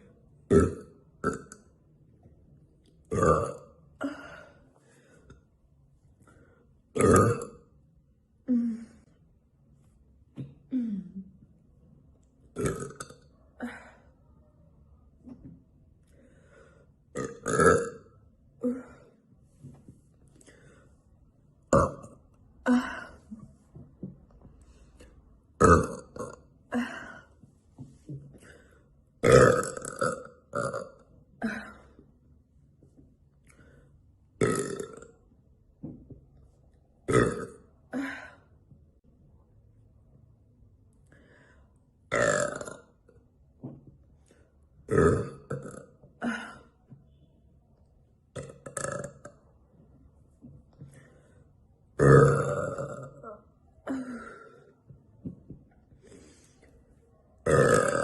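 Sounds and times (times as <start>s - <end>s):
woman burping: 0.5s - 1.6s, 3.1s - 4.6s, 7.0s - 7.7s, 10.4s - 11.4s, 12.6s - 14.0s, 17.2s - 19.1s, 21.7s - 23.5s, 25.6s - 27.4s, 29.2s - 32.0s, 34.4s - 35.1s, 37.1s - 38.4s, 42.1s - 42.9s, 44.9s - 46.8s, 48.4s - 49.4s, 52.0s - 54.7s, 57.4s - 58.0s.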